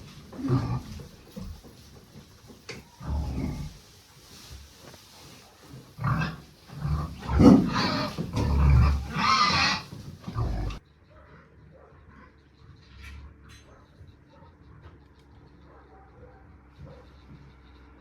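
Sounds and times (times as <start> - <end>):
farm animal calling: 0.0 - 18.0.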